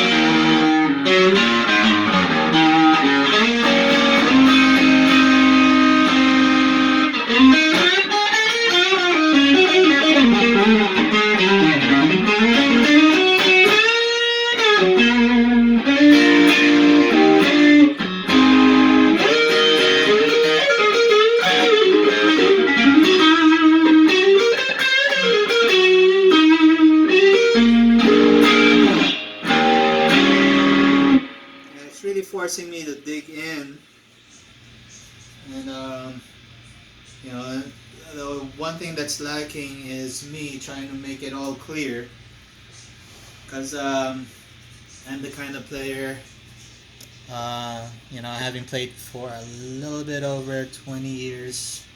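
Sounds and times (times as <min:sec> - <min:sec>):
overdriven electric guitar blues lead: 0:00.0 - 0:31.8.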